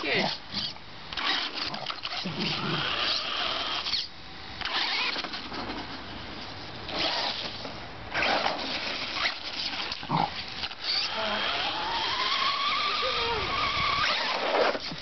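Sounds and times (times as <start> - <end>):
rc truck motor and tyres: 0.0 - 6.1, 6.9 - 15.0.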